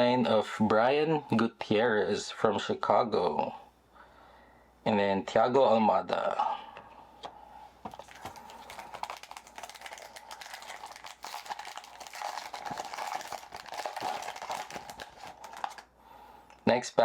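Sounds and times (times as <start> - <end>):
foil wrapper crinkling: 7.9 - 15.9.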